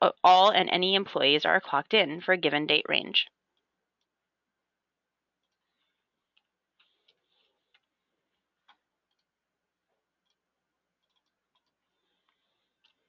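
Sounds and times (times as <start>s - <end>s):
small irregular clicks: 3.4s - 4.2s, 5.3s - 9.4s, 10.0s - 13.0s.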